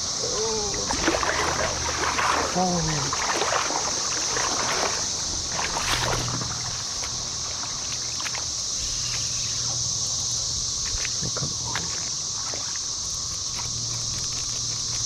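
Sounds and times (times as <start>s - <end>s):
creek water rushing: 0.0s - 8.6s
cicadas droning: 0.0s - 15.0s.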